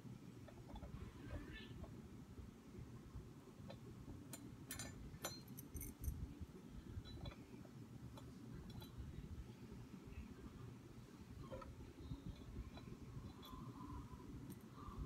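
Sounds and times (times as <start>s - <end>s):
small metal parts clinking: 4.7s - 6.2s.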